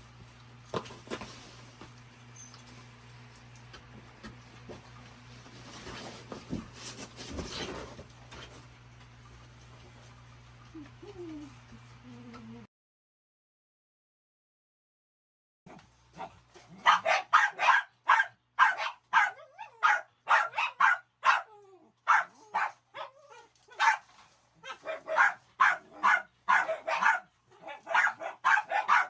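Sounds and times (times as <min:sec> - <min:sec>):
dogs barking excitedly: 0:15.7 - 0:29.0
dogs whining yelps: 0:16.8 - 0:24.0, 0:24.6 - 0:29.0.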